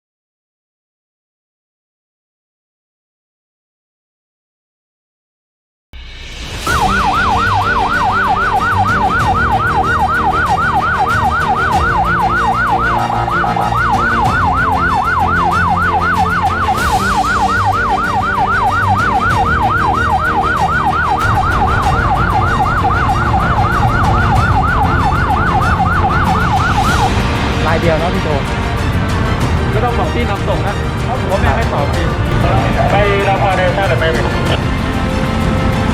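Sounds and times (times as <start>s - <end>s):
siren yelp: 6.7s - 27.4s
low rumble: 32.2s - 35.3s.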